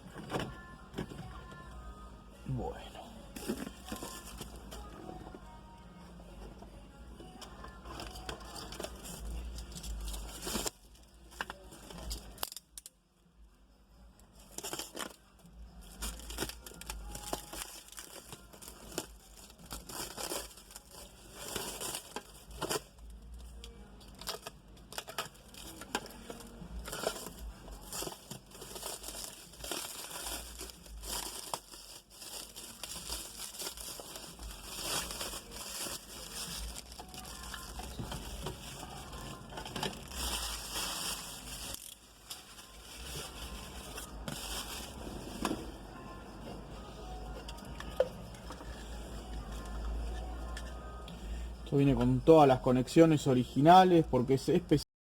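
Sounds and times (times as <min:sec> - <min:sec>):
plastic crinkling and rustling: 0:03.4 - 0:05.4, 0:07.6 - 0:12.9, 0:14.3 - 0:46.4.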